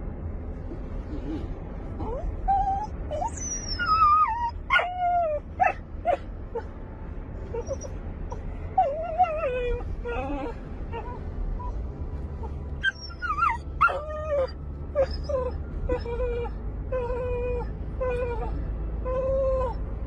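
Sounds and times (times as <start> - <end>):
low steady rumble: 0.0 - 20.0
dog whining and whimpering: 1.1 - 6.7, 7.5 - 11.8, 12.4 - 19.9
dog yelps: 2.0 - 6.7, 7.6 - 8.0, 12.8 - 18.6.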